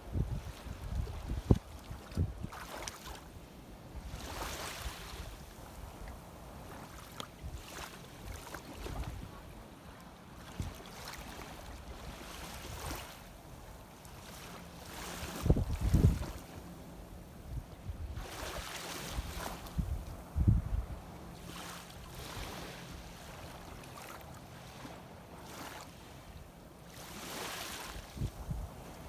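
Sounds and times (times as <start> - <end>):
wind buffeting microphone: 0.0 - 2.6, 15.2 - 16.4, 17.3 - 21.1, 28.1 - 29.0
seawater sloshing: 0.4 - 3.4, 10.3 - 20.0, 21.4 - 29.0.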